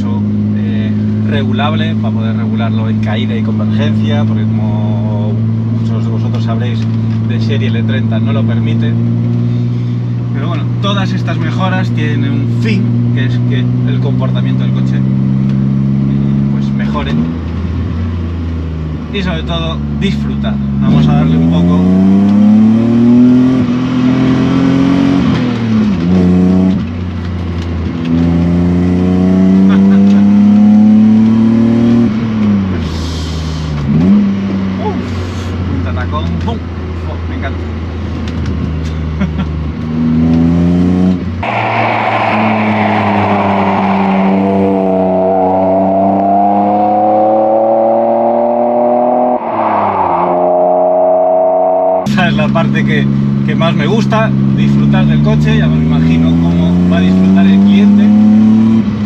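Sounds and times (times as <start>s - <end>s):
car engine accelerating hard: 20.8s - 35.7s, 37.8s - 59.0s
car engine revving: 40.1s - 52.2s.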